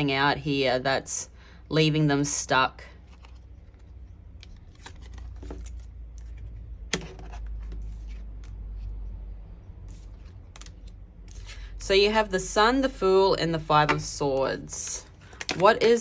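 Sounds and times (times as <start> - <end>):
cards being shuffled: 3.0 - 9.0.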